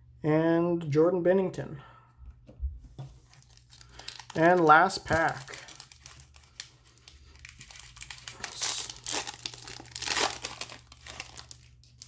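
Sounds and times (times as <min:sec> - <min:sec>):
wrapper tearing and crinkling: 0:03.2 - 0:12.0.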